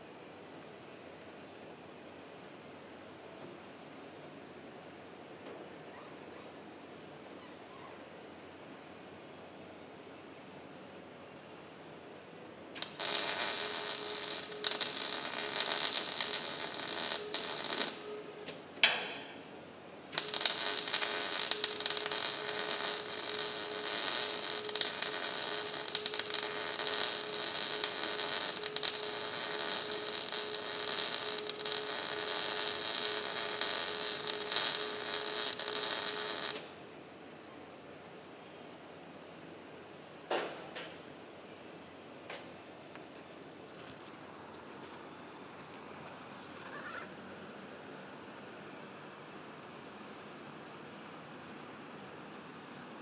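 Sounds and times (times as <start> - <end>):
electric arc welding crackle: 12.8 - 18.2, 20.1 - 36.8.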